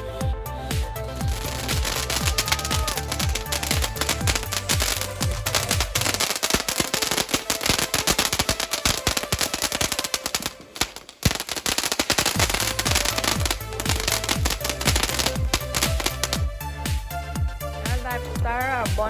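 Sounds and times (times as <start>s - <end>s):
music with thumping beat: 0.0s - 19.0s
firework crackling and popping: 1.0s - 17.2s
loud firework bang: 1.3s - 16.5s.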